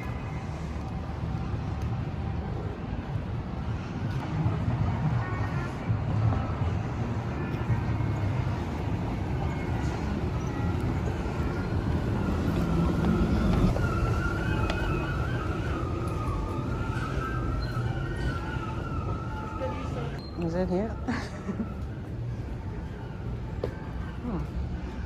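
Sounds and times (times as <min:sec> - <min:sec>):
street traffic rumble: 0:00.0 - 0:25.0
emergency siren wailing: 0:06.7 - 0:25.0.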